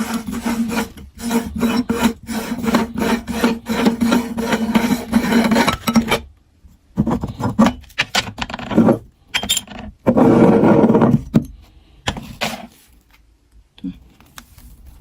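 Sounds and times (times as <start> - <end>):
meat grinder grinding: 0.0 - 5.8.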